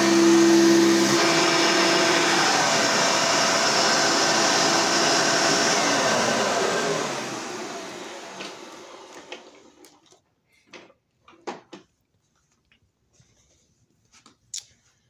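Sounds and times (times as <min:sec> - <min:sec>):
vacuum cleaner motor running down: 0:00.0 - 0:09.8.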